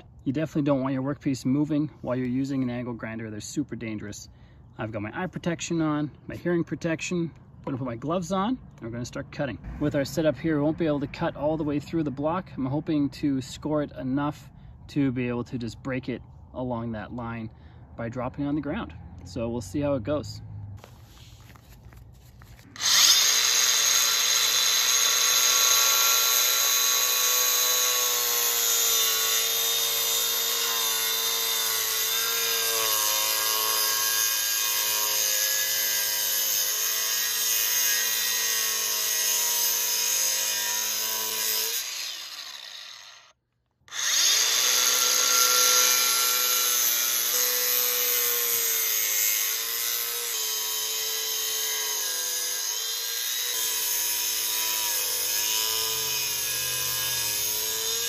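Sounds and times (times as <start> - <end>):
angle grinder cutting masonry: 22.6 - 58.0.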